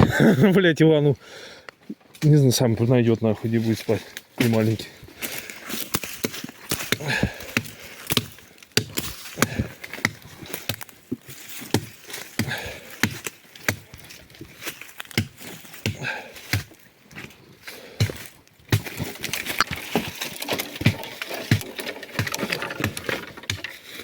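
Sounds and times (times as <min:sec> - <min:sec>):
axe chopping wood: 0:05.8 - 0:14.1, 0:15.0 - 0:16.8, 0:18.0 - 0:23.8
rustling: 0:16.4 - 0:24.0.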